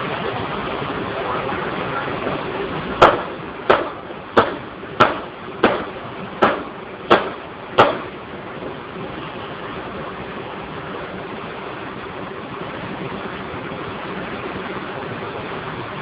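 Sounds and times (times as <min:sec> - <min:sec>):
steady rushing hiss: 0:00.0 - 0:16.0
sharp knocks: 0:03.0 - 0:08.1.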